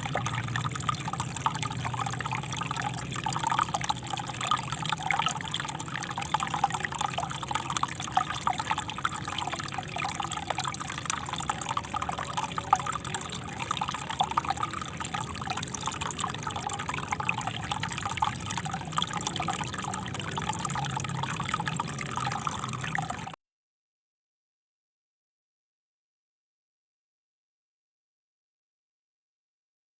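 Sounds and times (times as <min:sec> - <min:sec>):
small river flowing: 0:00.0 - 0:23.4.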